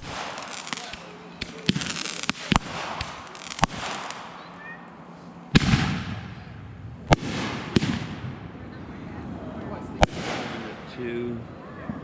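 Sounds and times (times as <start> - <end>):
fireworks bangs: 0.0 - 4.5, 5.5 - 8.4, 10.0 - 11.0.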